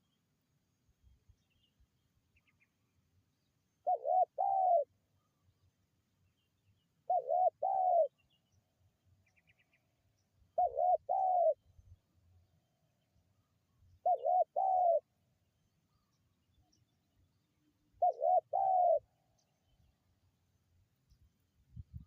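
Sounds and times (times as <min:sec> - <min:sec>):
faint high bird chirps: 0:01.0 - 0:20.2
dove cooing: 0:03.8 - 0:04.9, 0:07.0 - 0:08.1, 0:10.6 - 0:11.6, 0:14.0 - 0:15.1, 0:18.0 - 0:19.1.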